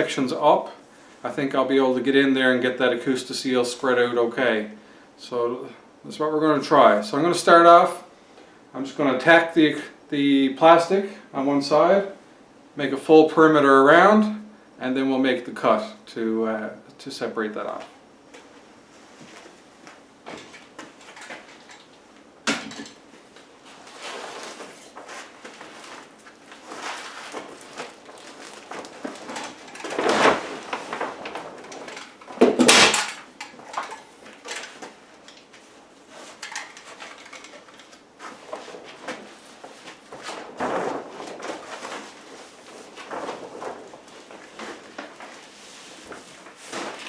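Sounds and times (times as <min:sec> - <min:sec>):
plastic sheeting rustling: 0:23.1 - 0:47.0.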